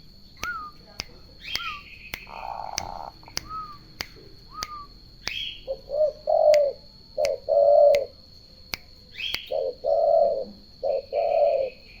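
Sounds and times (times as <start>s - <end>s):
bird chirps: 0.0s - 8.2s, 9.1s - 12.0s
sharp clicks: 0.4s - 5.5s
dove cooing: 5.7s - 8.1s, 9.5s - 11.8s.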